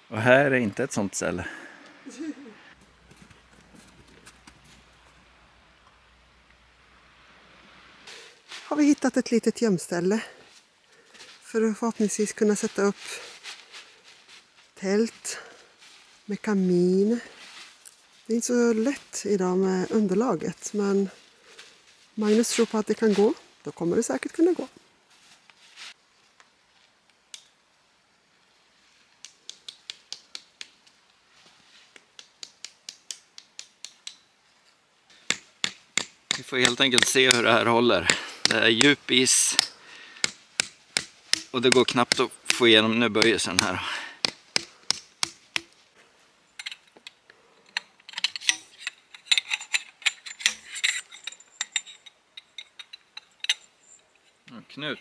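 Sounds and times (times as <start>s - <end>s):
tent pegs hammered into ground: 29.2s - 31.0s, 31.9s - 34.3s, 35.2s - 45.8s
metallic clicks and rattles of gear: 46.6s - 55.0s.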